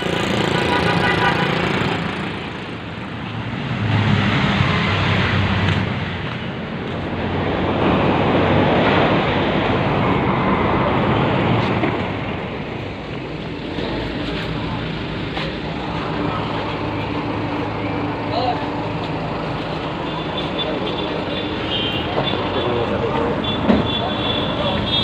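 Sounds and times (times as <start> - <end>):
traffic rushing noise: 0.0 - 25.0.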